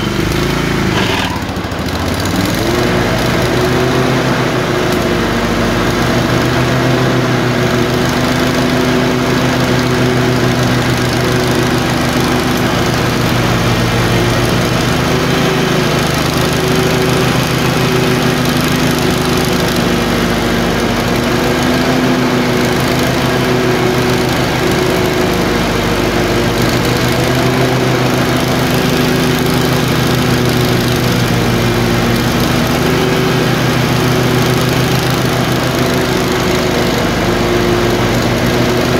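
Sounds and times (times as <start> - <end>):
twin-cylinder engine misfiring: 0.0 - 38.9.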